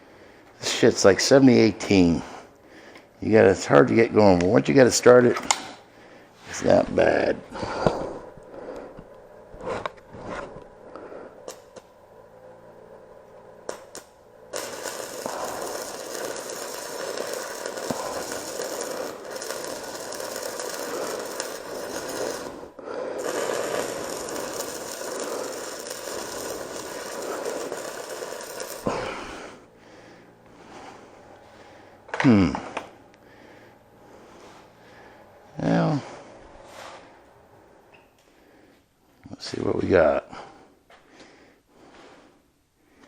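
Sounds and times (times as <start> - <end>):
welding arc crackling: 11.4 - 12.0, 12.8 - 29.7
welding rod striking clicks: 11.5 - 11.9, 13.7 - 22.6.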